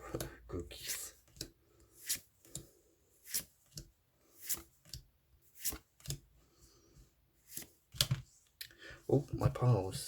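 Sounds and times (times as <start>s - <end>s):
cards swishing: 5.6s - 6.2s.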